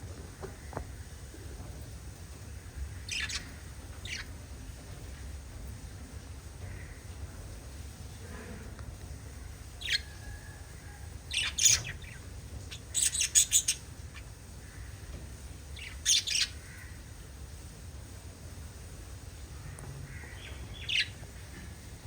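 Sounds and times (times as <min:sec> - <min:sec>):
lovebirds chirping: 0:02.7 - 0:04.4, 0:09.8 - 0:10.3, 0:10.9 - 0:15.0, 0:15.6 - 0:17.0, 0:19.6 - 0:22.0.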